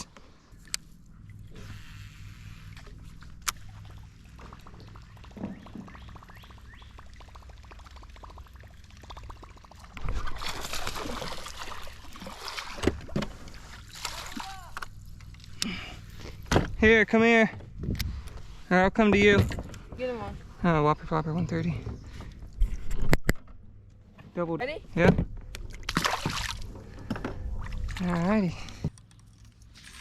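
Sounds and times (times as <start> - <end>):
water splashing around boat: 0.0 - 16.5, 25.4 - 28.9.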